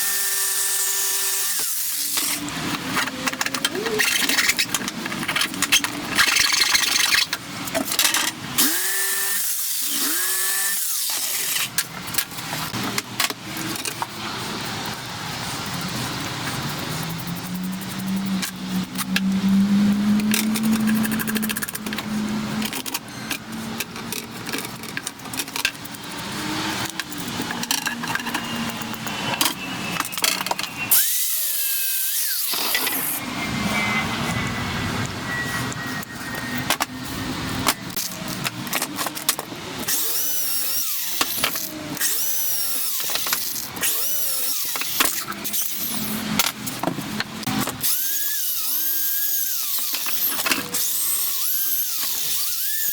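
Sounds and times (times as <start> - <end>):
power tool running: 8.6 - 11.7.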